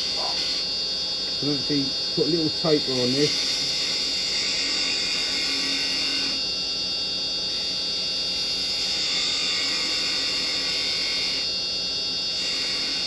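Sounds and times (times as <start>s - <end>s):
chisel cutting wood hiss: 0.0s - 6.4s, 8.7s - 11.5s, 12.3s - 13.0s
wood lathe humming: 1.3s - 6.4s, 8.7s - 11.4s.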